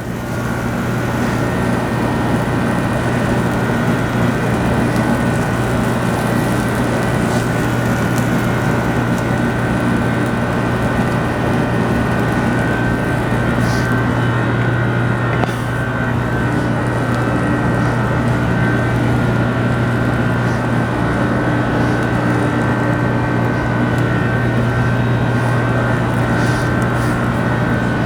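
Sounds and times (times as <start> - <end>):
droning machinery hum: 0.0 - 28.0.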